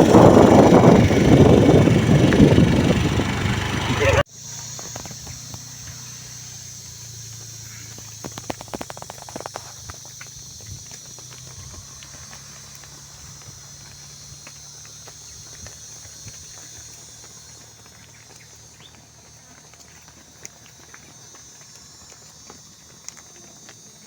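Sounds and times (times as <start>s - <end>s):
low hum: 0.0s - 4.2s
cattle knocks and clatters: 7.4s - 24.0s.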